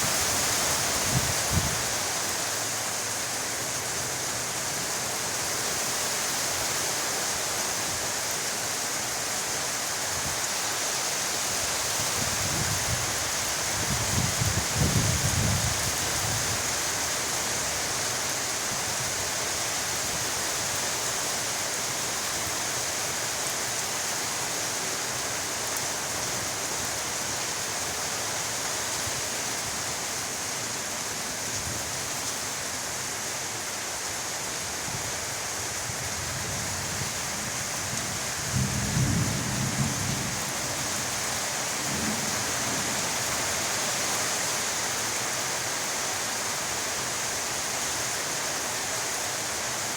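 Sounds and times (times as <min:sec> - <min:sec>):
heavy rain falling: 0:00.0 - 0:49.9
low thunder rumbles: 0:38.4 - 0:40.5.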